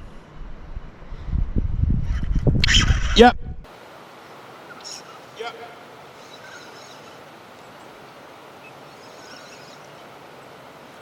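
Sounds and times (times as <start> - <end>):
creek water flowing: 3.7 - 11.0
small bird twittering: 6.1 - 10.5.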